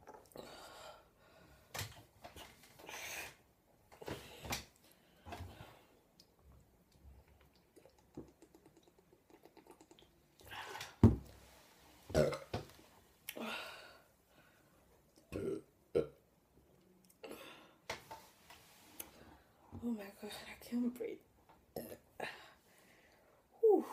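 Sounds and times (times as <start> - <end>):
woman belching loudly: 15.3 - 16.2.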